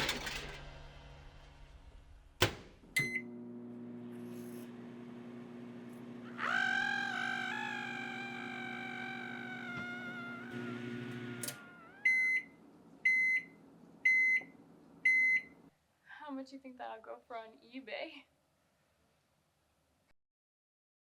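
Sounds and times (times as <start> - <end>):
microwave humming: 0.0 - 1.1, 2.1 - 15.7
microwave door thunk: 2.4 - 3.2
microwave beep: 3.0 - 3.6, 10.5 - 15.6.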